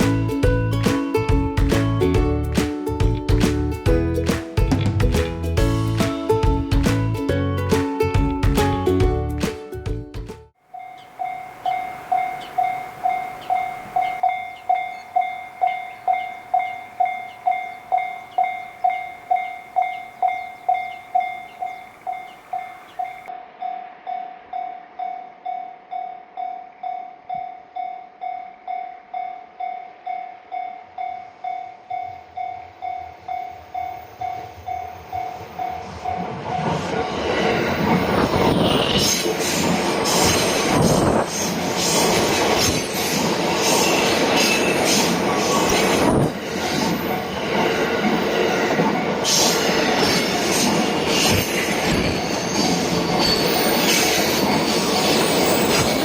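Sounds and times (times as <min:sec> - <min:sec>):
level crossing warning bell: 0:10.7 - 0:37.3, 0:44.2 - 0:56.0.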